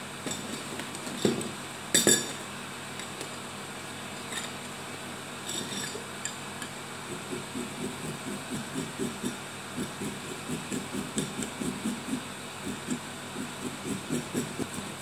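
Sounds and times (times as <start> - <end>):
utensils and dishes clinking: 5.4 - 6.7.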